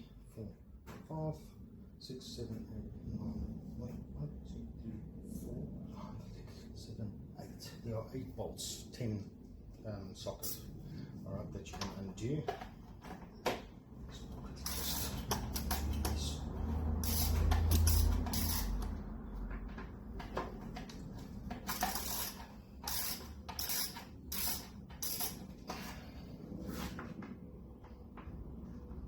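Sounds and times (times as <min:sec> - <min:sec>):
low rumble: 0:01.7 - 0:11.6
socket wrench undoing bolts: 0:14.6 - 0:16.2, 0:17.0 - 0:18.9, 0:21.5 - 0:25.5
metallic clicks scrapes and knocks: 0:14.6 - 0:16.4, 0:17.0 - 0:19.0.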